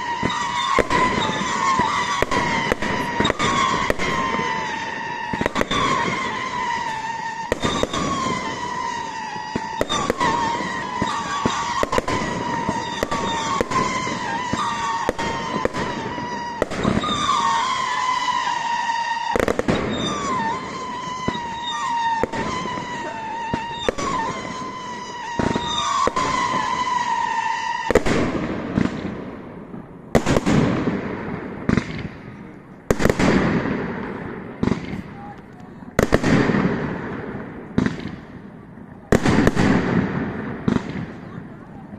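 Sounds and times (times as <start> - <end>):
wavering high whistle: 0.0 - 27.9
fireworks bangs and crackles: 0.0 - 41.9.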